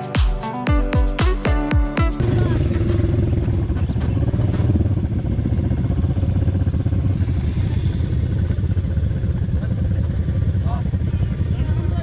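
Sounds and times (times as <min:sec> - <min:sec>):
atv engine running: 0:02.6 - 0:12.0.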